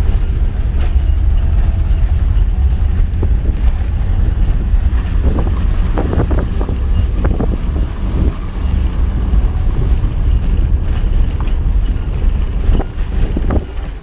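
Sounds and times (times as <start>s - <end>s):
vehicle rumbling on rough road: 0.0s - 14.0s
wind buffeting microphone: 0.0s - 14.0s.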